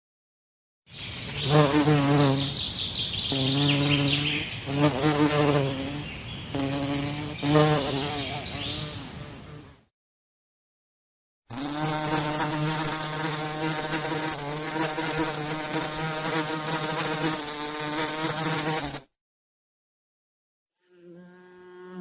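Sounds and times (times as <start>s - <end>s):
bee buzzing in flight: 1.4s - 2.6s, 3.3s - 9.8s, 11.5s - 19.1s, 20.8s - 22.0s.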